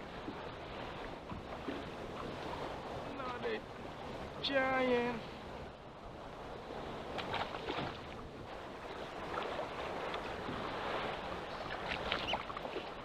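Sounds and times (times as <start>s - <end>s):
water slapping boat hull: 0.0s - 13.0s
wind on microphone: 0.0s - 13.0s.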